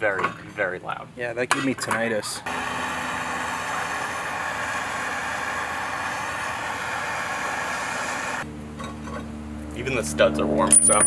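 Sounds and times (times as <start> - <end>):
gas torch hissing: 2.5 - 8.5.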